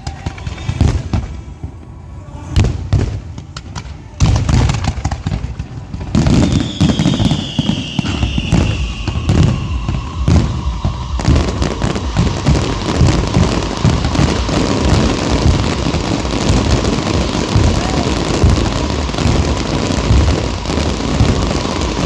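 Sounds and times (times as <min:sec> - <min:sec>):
fireworks banging: 0:00.0 - 0:22.0
high falling whistle: 0:06.2 - 0:22.0.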